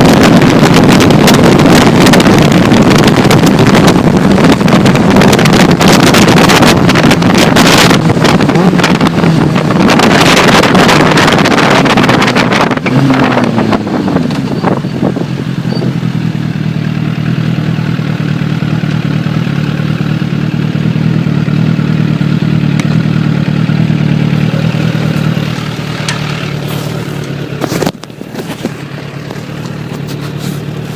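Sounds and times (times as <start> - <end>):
heavy wind noise: 0.0 - 16.2, 23.9 - 30.9
motorcycle engine: 0.0 - 30.9.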